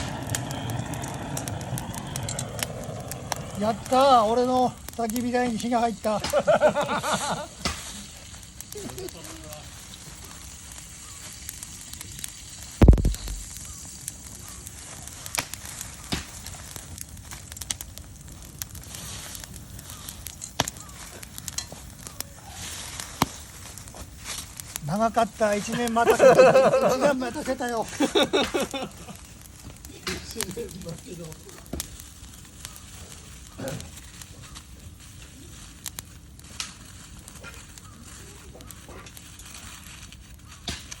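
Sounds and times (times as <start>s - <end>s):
low rumble: 0.0s - 4.0s, 12.8s - 13.5s
leaves crackling in fire: 0.0s - 41.0s
heavy low thump: 12.8s - 13.5s.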